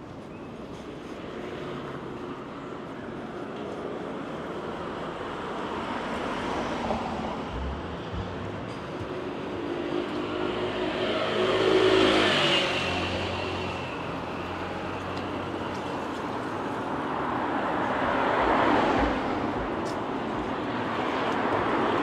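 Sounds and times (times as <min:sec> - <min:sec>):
city background noise: 0:00.0 - 0:22.0.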